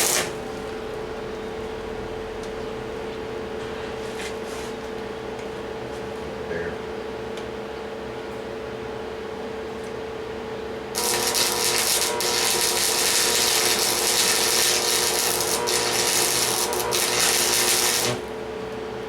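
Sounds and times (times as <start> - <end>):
welding arc crackling and hissing: 0.0 - 0.4, 11.0 - 18.3.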